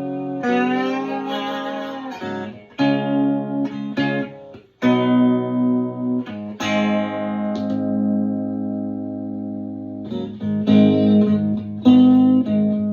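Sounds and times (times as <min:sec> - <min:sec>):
slide electric guitar: 0:00.0 - 0:12.9.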